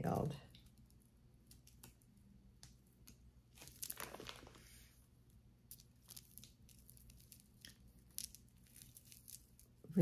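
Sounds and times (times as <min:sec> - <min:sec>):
necklace rustling and clicking: 0:05.7 - 0:09.9.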